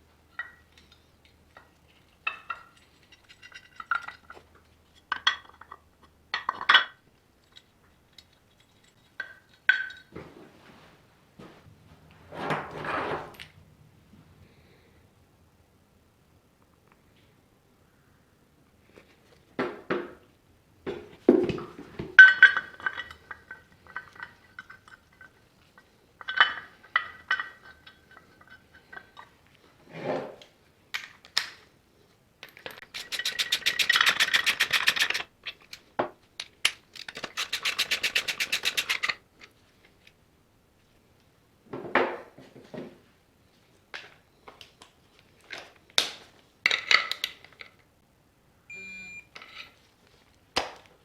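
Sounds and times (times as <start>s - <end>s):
metal tools clinking and scraping: 0.3s - 5.8s, 6.4s - 10.1s, 22.2s - 29.7s, 32.5s - 35.8s, 37.0s - 39.2s, 49.4s - 49.8s
rapid clicking: 32.9s - 35.2s.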